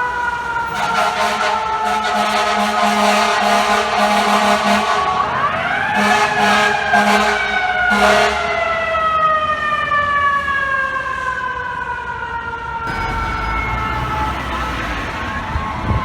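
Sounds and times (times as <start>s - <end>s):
air horn blasts: 0.7s - 5.2s, 6.0s - 8.5s
fire truck siren winding: 11.5s - 16.0s.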